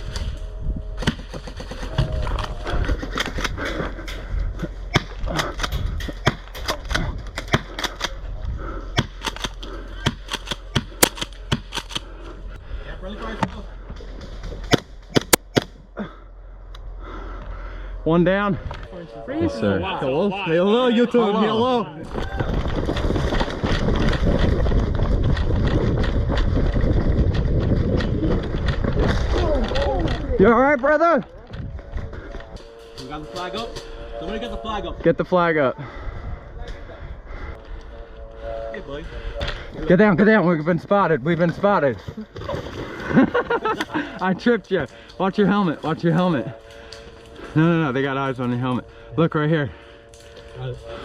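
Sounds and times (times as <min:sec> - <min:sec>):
wind buffeting microphone: 0:00.0 - 0:15.4, 0:22.0 - 0:41.2
airsoft guns firing: 0:09.0 - 0:12.0.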